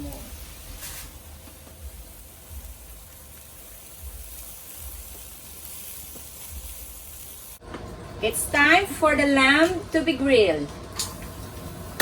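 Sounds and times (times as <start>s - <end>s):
beef sizzling on a grill: 0.0s - 7.6s, 10.8s - 12.0s.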